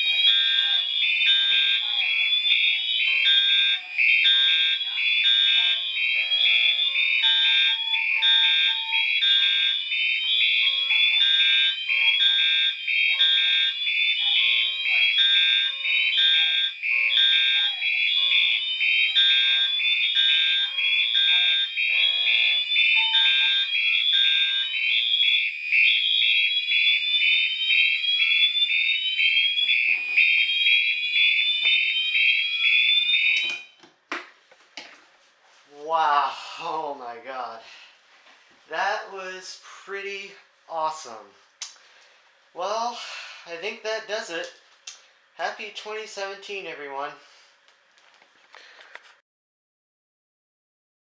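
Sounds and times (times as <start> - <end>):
rising alarm sweeps: 0.0 - 33.4
fire alarm horns pulsing: 0.0 - 33.8.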